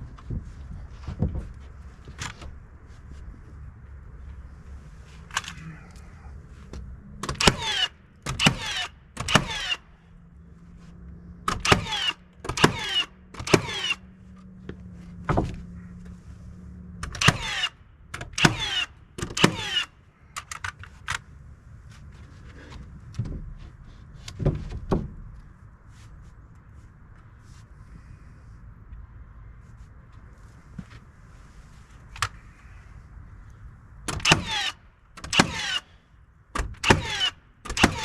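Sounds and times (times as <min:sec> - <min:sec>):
nail gun firing into wood: 0:07.2 - 0:09.8, 0:11.5 - 0:14.0, 0:17.0 - 0:20.7, 0:34.1 - 0:35.9, 0:36.5 - 0:38.0.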